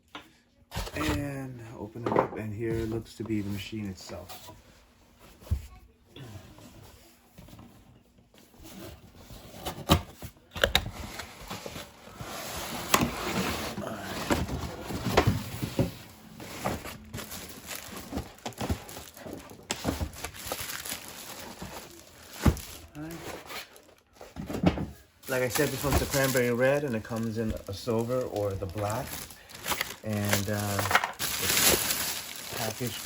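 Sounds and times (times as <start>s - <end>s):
packing material rustling: 11.6s - 24.3s, 25.2s - 33.0s.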